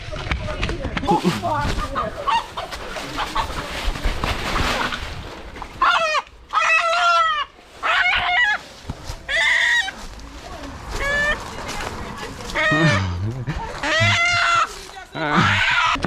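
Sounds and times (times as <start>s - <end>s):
wild chicken harsh calls: 1.2s - 3.6s, 5.7s - 10.2s, 10.9s - 11.5s, 12.4s - 16.0s.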